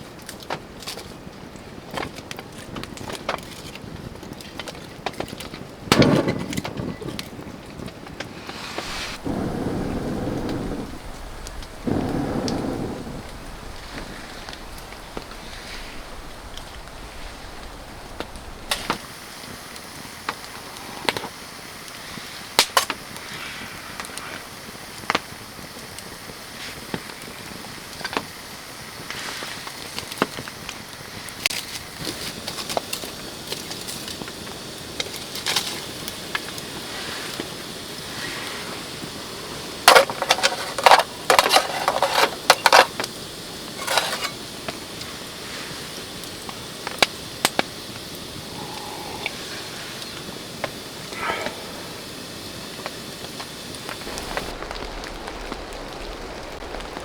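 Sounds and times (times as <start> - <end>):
rain and wind hiss: 8.0 - 57.0
crinkling handling noises: 39.9 - 43.0.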